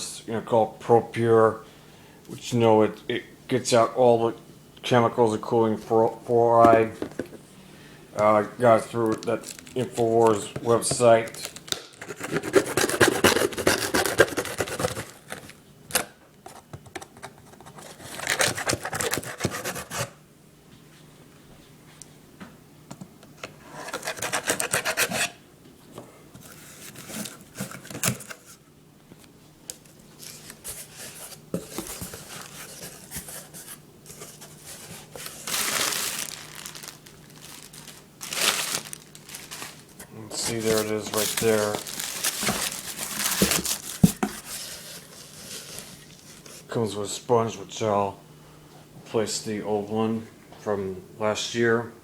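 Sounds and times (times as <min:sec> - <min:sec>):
packaging tearing and crinkling: 0:09.0 - 0:10.3, 0:11.2 - 0:15.6, 0:17.8 - 0:20.1, 0:34.7 - 0:44.7.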